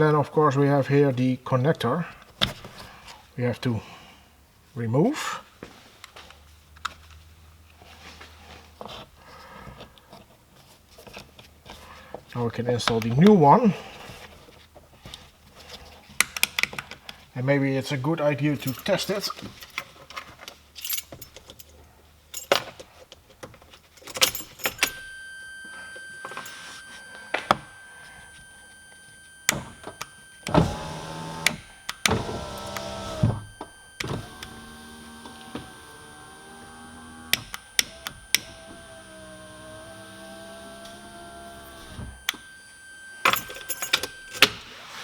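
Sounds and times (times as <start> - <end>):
electric window motor whine: 24.2 - 45.0
window switch clicks: 29.5 - 42.4.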